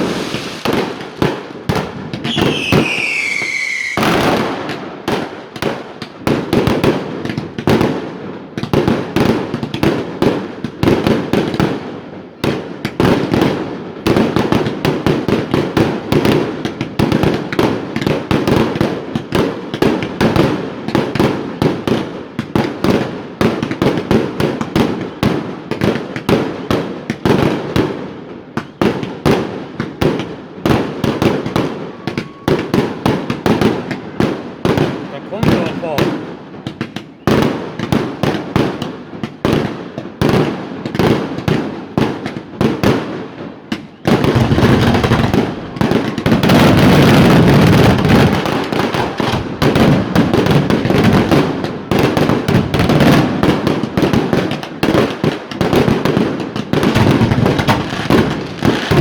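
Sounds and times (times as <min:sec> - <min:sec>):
whistling firework shell: 0:00.0 - 0:01.2, 0:01.8 - 0:05.0, 0:31.8 - 0:32.7
fireworks bangs and crackles: 0:00.0 - 0:59.0.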